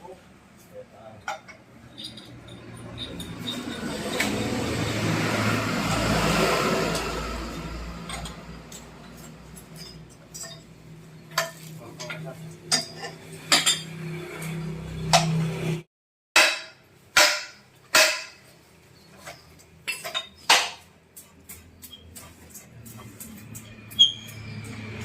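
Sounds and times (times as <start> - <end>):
metallic clinks and knocks: 1.2 - 4.8, 8.1 - 14.0, 18.1 - 25.0.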